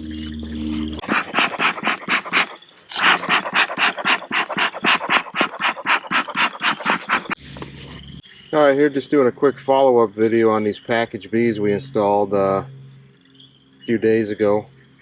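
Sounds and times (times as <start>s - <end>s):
rapid panting: 0.9s - 7.4s.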